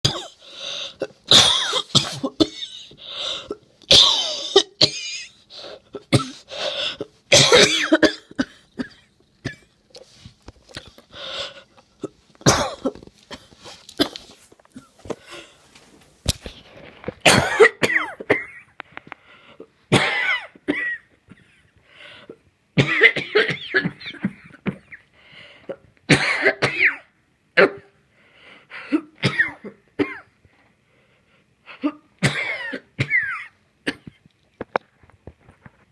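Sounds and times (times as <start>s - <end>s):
person coughing wheezily: 0.0s - 9.7s, 12.0s - 15.6s, 17.2s - 18.7s, 19.9s - 21.6s, 22.8s - 25.0s, 25.7s - 28.0s, 28.8s - 30.3s, 31.8s - 34.2s.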